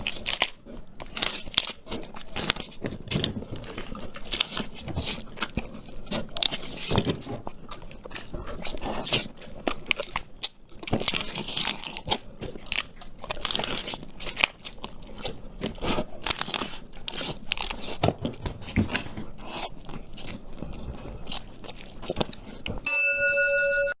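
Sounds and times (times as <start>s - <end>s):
crunchy chewing of food: 0.0s - 22.9s
steady tone: 22.9s - 24.0s.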